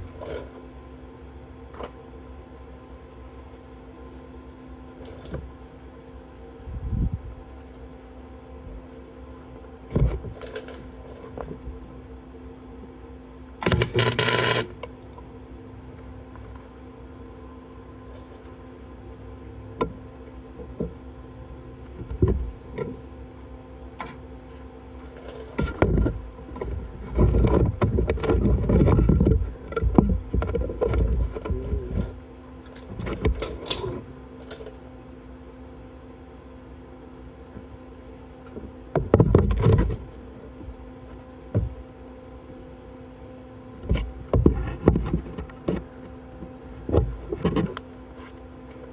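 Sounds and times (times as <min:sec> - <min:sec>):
welding machine humming: 0:13.6 - 0:15.2.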